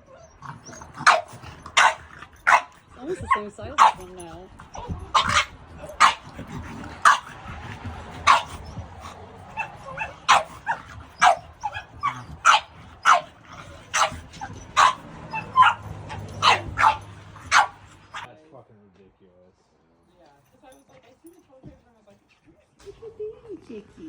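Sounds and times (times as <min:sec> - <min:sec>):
dog barking: 0:00.0 - 0:07.4, 0:08.1 - 0:18.3.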